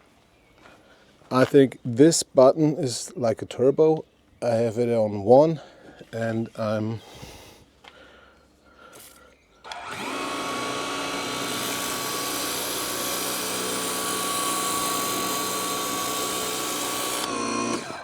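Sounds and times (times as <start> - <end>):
pressure washer motor whining: 9.7 - 18.0.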